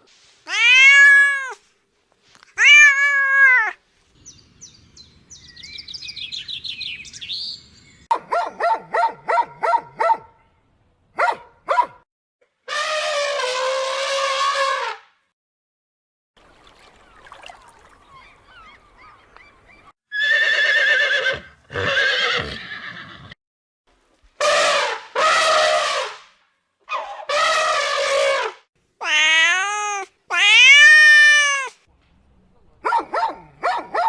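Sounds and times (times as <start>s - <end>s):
horses whinnying: 20.1s - 23.4s.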